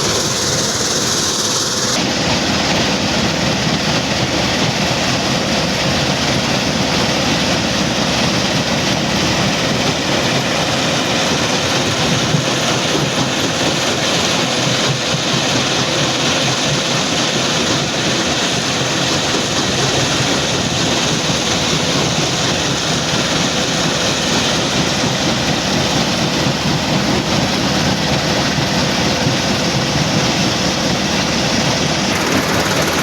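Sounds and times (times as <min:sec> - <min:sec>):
stone crusher machinery din: 0:31.9 - 0:33.0.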